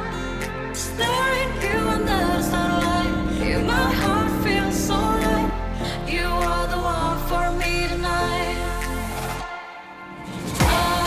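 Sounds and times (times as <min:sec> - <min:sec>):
background music melody: 0:00.0 - 0:09.9.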